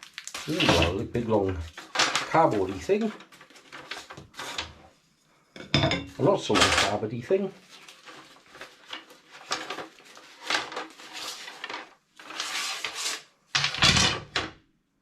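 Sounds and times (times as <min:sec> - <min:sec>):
cardboard scraping and rustling: 0:07.6 - 0:13.2.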